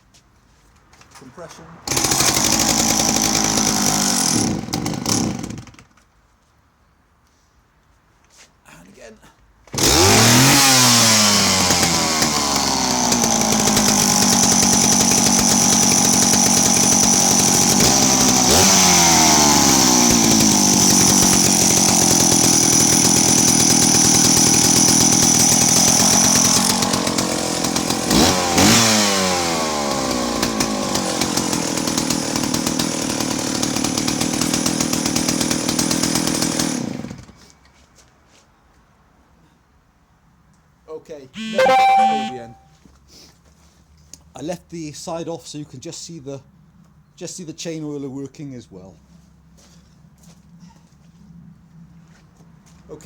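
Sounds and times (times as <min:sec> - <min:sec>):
chainsaw engine running and revving: 0:01.9 - 0:05.7, 0:09.8 - 0:37.2, 0:41.4 - 0:42.3.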